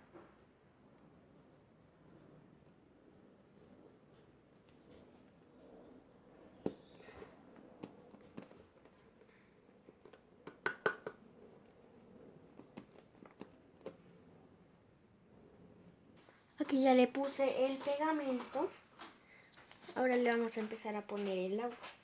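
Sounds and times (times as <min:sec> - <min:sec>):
plastic bottle clicks and taps: 0:10.1 - 0:11.2.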